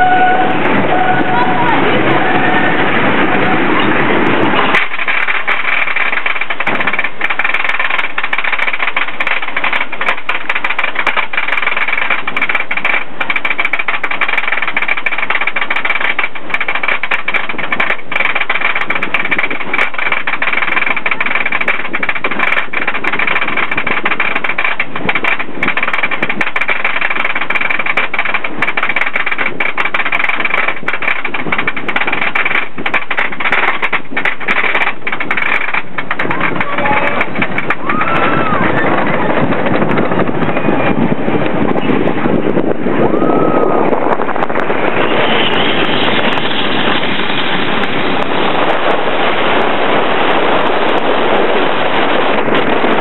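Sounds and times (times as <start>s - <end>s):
lift chain clatter: 4.4s - 40.8s
rapid ratcheting clicks: 4.7s - 40.1s.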